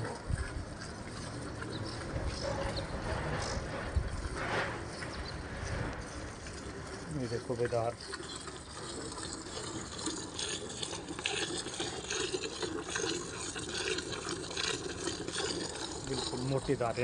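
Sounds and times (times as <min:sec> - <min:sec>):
milk squirting into a pail: 0:06.0 - 0:17.0.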